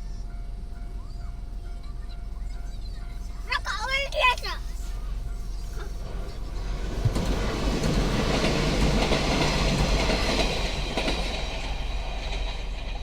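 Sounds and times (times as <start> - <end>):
train wheels clattering over rail joints: 5.0 - 13.0.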